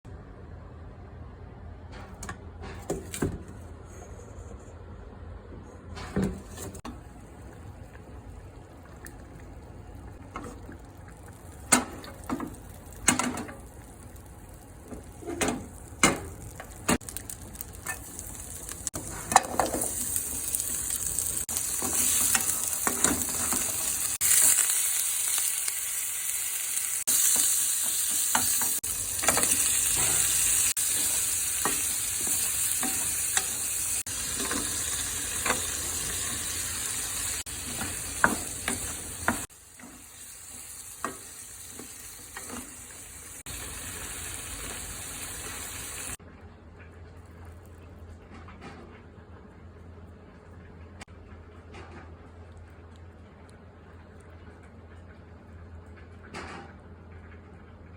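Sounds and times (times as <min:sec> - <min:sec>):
vegetables sizzling in a pan: 0:11.2 - 0:46.2.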